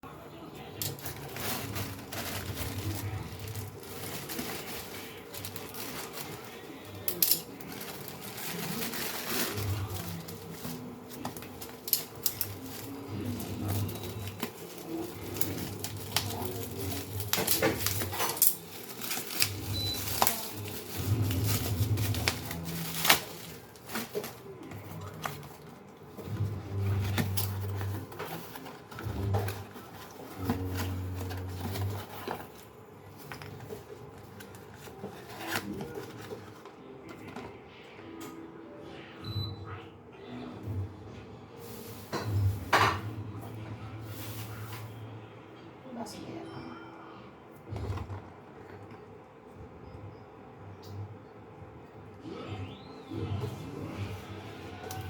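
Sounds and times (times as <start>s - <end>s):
low background hum: 0.0s - 55.0s.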